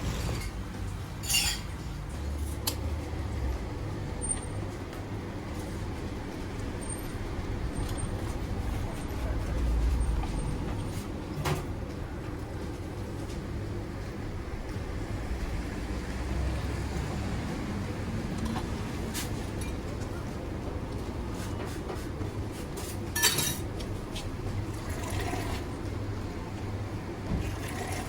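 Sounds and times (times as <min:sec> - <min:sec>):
road traffic rumble: 0:00.0 - 0:28.0.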